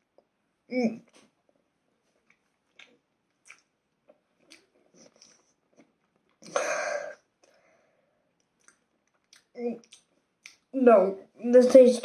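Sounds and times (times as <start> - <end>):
person chewing crunchy bread: 2.1 - 6.6.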